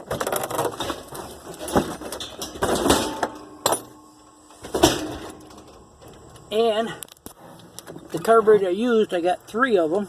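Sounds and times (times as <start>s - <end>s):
objects knocking and clattering: 0.0s - 6.4s.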